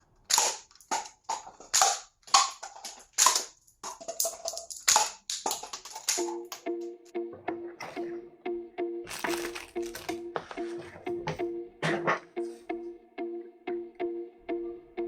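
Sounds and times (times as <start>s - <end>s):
background music: 6.0s - 15.0s.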